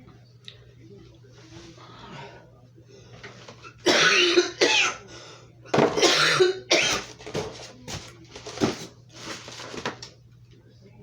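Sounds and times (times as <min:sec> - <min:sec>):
person coughing: 0:03.9 - 0:05.0, 0:06.0 - 0:07.1.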